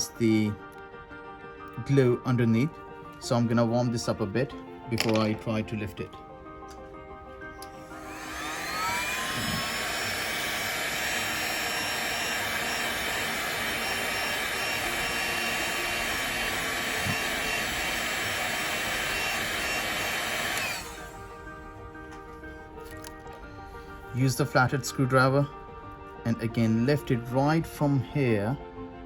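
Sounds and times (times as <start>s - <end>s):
hot-air blower rushing: 7.5s - 22.1s.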